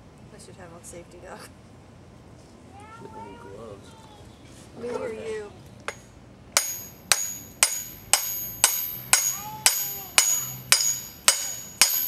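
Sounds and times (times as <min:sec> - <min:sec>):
metallic clanks with ringing: 0:05.9 - 0:12.0.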